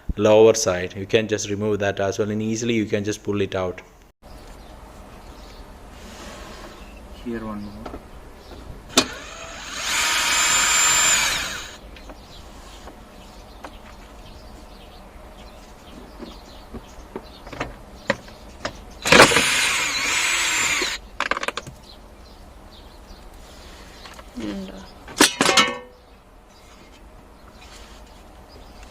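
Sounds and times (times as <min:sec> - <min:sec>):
cordless power driver whining: 0:08.9 - 0:11.8, 0:19.0 - 0:21.0.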